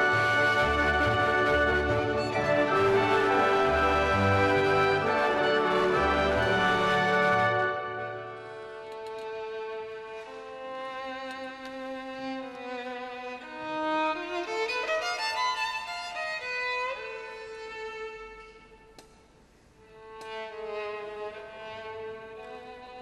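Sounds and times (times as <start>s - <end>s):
ensemble accompaniment: 0.0s - 8.8s
solo violin melody: 0.0s - 19.0s, 19.8s - 23.0s.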